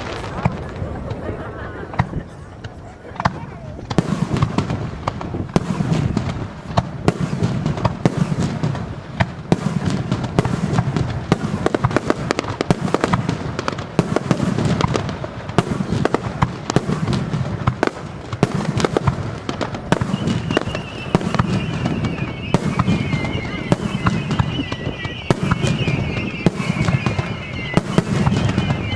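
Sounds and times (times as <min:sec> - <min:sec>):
fireworks bangs and crackling: 0:00.0 - 0:28.9
rolling booms: 0:00.0 - 0:28.9.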